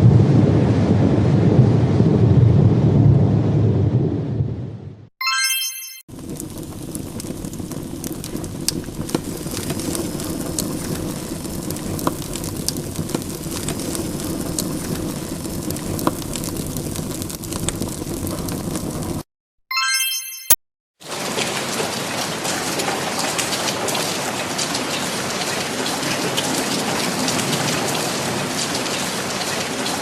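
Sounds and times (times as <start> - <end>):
steady hiss with crackles: 6.1 - 19.2.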